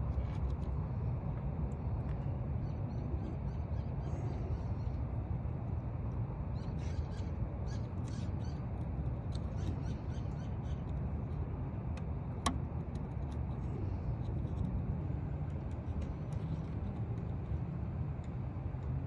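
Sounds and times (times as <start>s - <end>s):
low background rumble: 0.0s - 19.0s.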